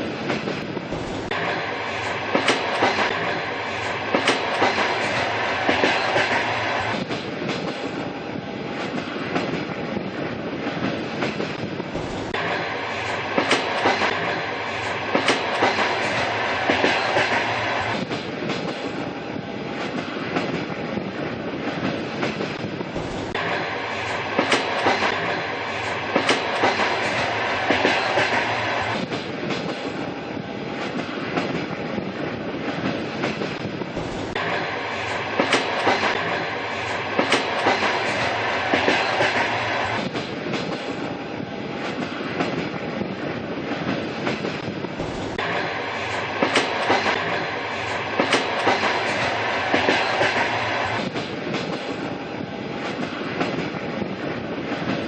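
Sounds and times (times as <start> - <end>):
train wheels clacking on rails: 0.0 - 55.0.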